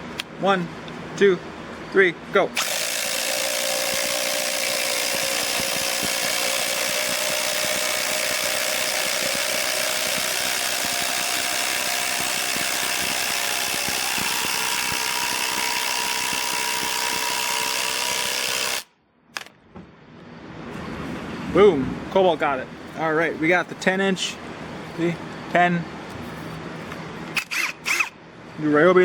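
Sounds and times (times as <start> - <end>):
impact drivers hammering: 2.6 - 19.5.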